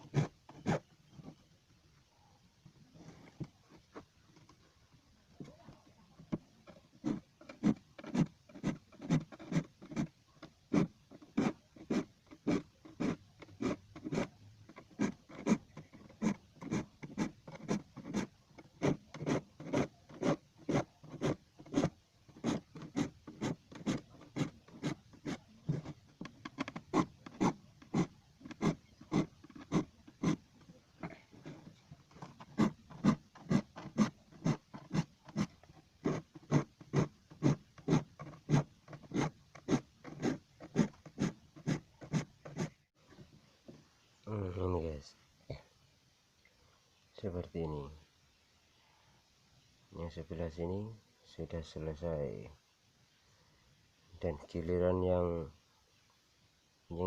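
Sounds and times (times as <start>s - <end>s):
file rasping on saw teeth: 7.0s - 10.1s, 10.7s - 30.4s, 31.0s - 42.8s.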